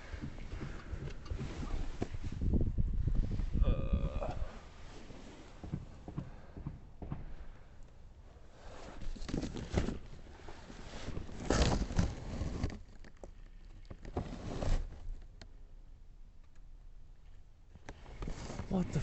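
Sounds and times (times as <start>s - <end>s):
rummaging through boxes: 8.6s - 15.0s.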